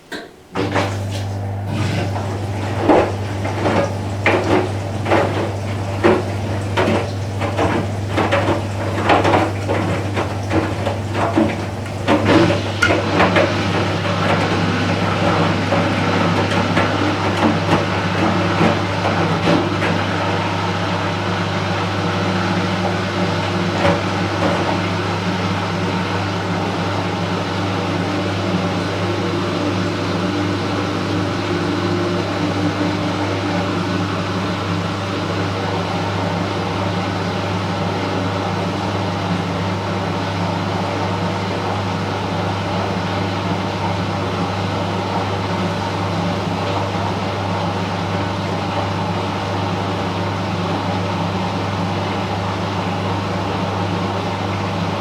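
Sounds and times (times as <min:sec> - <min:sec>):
water noise: 0:00.0 - 0:25.0
washing machine hum: 0:00.0 - 0:55.0
knocks and clunks: 0:00.1 - 0:14.6.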